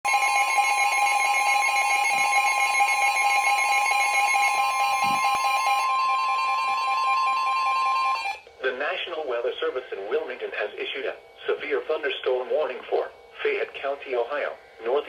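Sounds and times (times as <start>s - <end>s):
steady electronic alarm tone: 0.1s - 9.8s.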